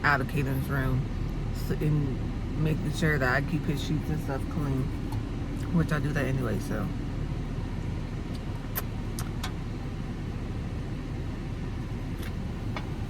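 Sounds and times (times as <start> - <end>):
car rumble inside cabin: 0.0 - 13.0.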